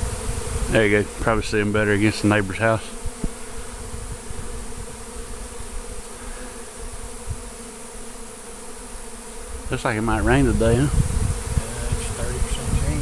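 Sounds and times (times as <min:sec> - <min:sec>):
bees buzzing: 0:00.0 - 0:13.0.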